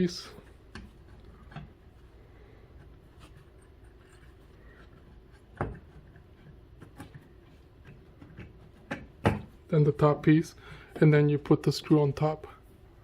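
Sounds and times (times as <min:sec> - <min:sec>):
faint rubbing and handling: 0:00.0 - 0:08.9.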